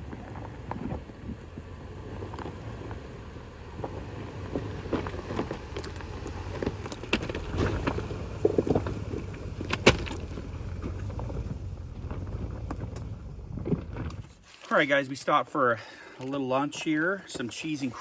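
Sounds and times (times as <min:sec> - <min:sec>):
vehicle rumbling over rocky trail: 0:00.0 - 0:18.0
knocks and clatters: 0:03.8 - 0:14.3.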